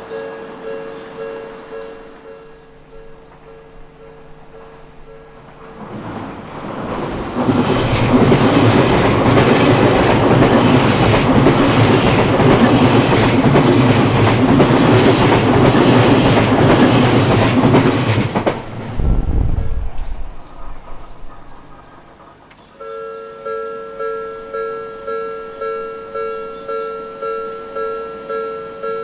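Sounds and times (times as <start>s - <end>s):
electric train passing: 0.0s - 22.5s
wheels clicking over rail joints: 4.5s - 18.8s.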